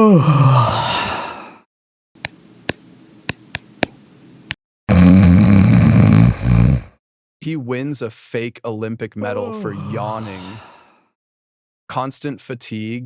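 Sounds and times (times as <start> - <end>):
man yawning loudly: 0.0 - 1.6, 9.2 - 10.8.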